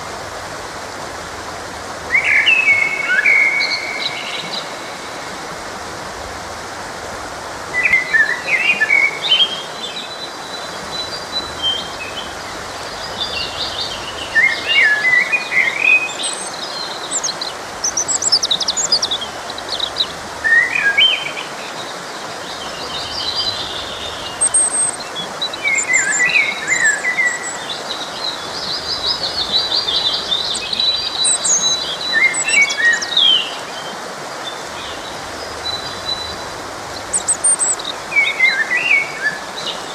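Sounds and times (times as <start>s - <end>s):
stream rushing: 0.0s - 39.9s
songbirds singing: 1.9s - 5.5s, 7.7s - 39.9s.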